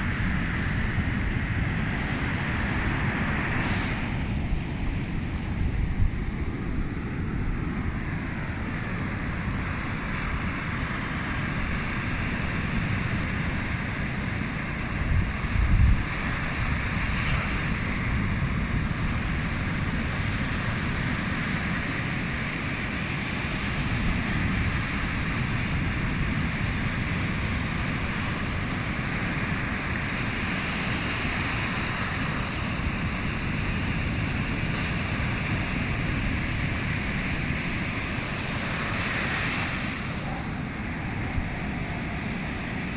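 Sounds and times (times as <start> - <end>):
sea waves washing on shore: 0.0 - 42.9
wind buffeting microphone: 0.0 - 42.9.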